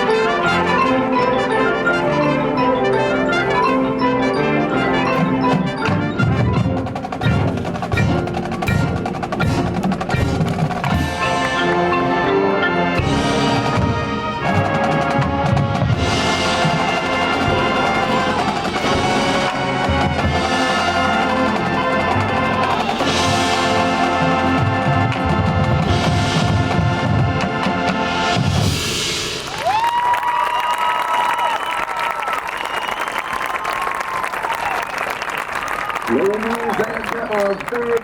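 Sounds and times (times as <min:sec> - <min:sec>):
marimba: 0:00.0 - 0:28.7
wind and brass chords: 0:00.0 - 0:29.5
drums: 0:00.0 - 0:34.9.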